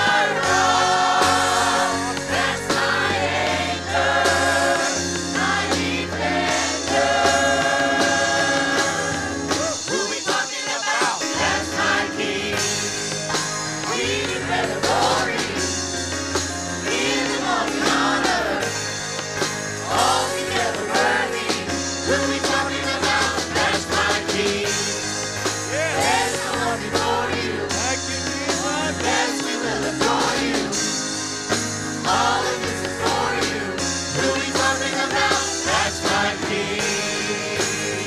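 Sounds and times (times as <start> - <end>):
band accompaniment: 0.0 - 38.0
choir singing gospel song: 0.0 - 38.0.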